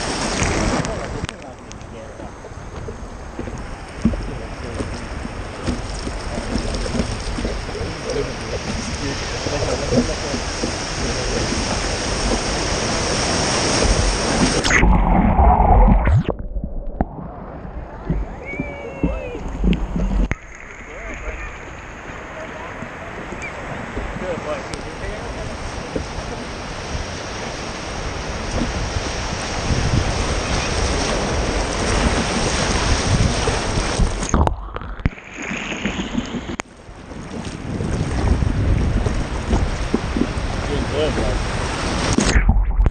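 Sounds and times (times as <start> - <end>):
ocean surf rushing: 0.0 - 42.9
wind rumble on microphone: 0.0 - 42.9
heavy low rumble: 14.5 - 23.0, 42.3 - 42.9.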